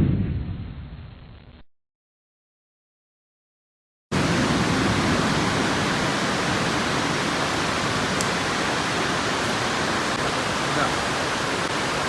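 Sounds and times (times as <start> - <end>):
steady rushing noise: 4.1 - 12.0.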